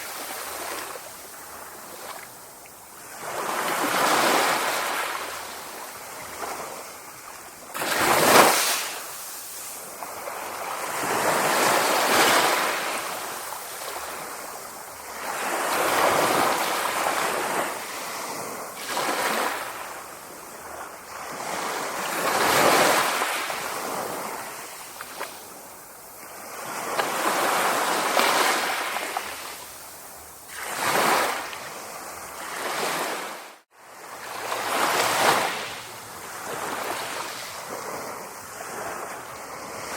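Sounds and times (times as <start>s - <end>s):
sea waves breaking: 7.6s - 29.6s, 30.5s - 39.9s.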